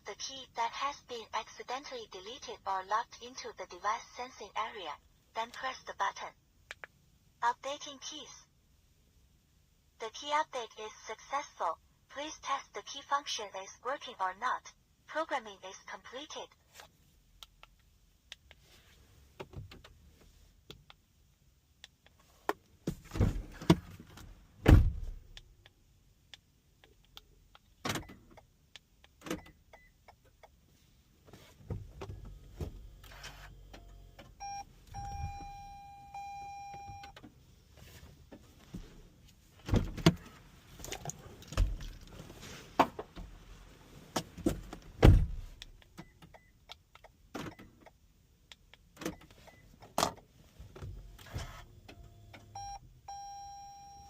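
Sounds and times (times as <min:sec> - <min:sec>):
steady beep: 0:34.4 - 0:37.1, 0:52.6 - 0:54.0
car doors and locks clunking: 0:39.6 - 0:40.4.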